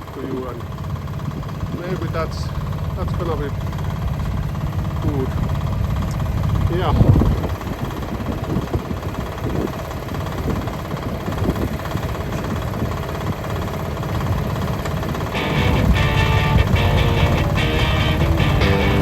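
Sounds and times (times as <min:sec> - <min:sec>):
excavator engine rumbling: 0:00.0 - 0:19.0
background music: 0:15.3 - 0:19.0.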